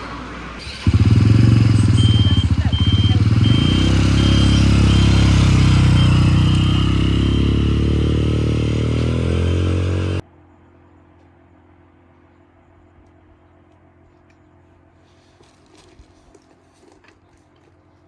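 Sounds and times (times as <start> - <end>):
motorcycle engine running: 0.6 - 10.2.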